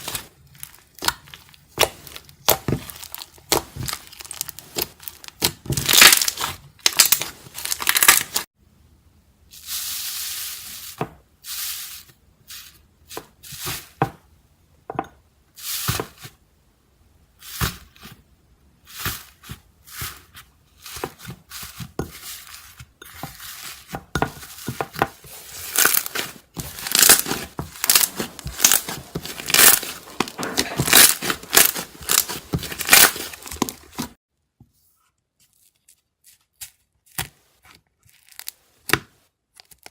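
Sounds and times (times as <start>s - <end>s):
slime crust crackling and crunching: 0.0s - 8.5s, 18.9s - 34.2s, 37.9s - 39.9s.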